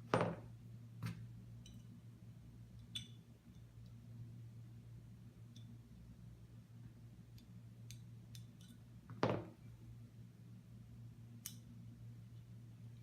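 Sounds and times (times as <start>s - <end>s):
light clicks of small parts: 7.3s - 8.8s, 11.4s - 11.7s.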